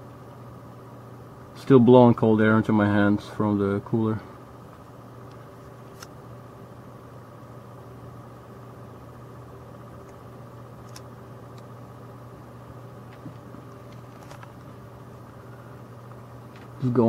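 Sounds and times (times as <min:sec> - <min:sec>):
computer fans whirring: 0:00.0 - 0:17.0
low constant hum: 0:00.0 - 0:17.0.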